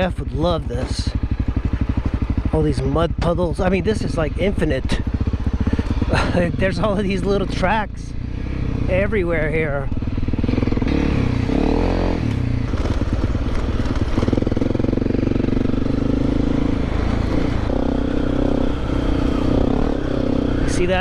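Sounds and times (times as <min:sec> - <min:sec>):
motorcycle engine revving: 0:00.0 - 0:21.0.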